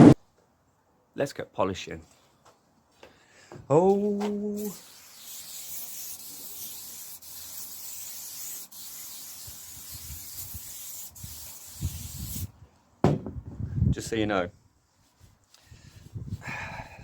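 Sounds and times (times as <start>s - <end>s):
polish spray hiss: 4.6s - 12.5s.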